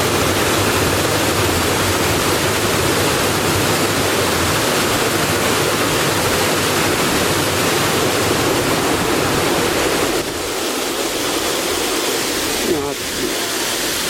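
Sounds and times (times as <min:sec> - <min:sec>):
rushing water: 0:00.0 - 0:14.0.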